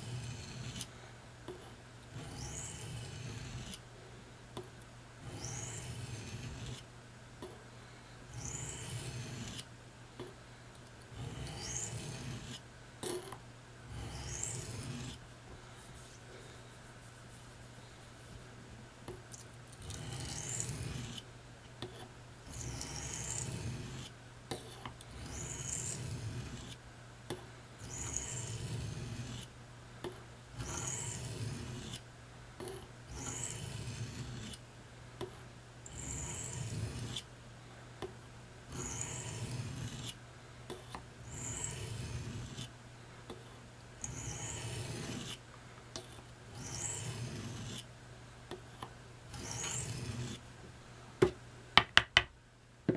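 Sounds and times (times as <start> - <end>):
steady low hum: 0.0 - 52.9
knife scraping on sharpening stone: 41.3 - 42.7, 44.0 - 45.4, 46.6 - 47.8, 49.3 - 50.4.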